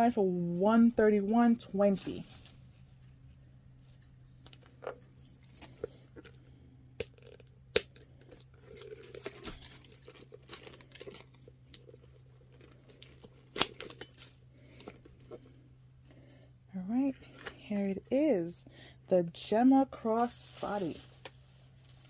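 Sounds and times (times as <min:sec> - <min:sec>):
packaging crinkling and tearing: 0:07.0 - 0:15.4.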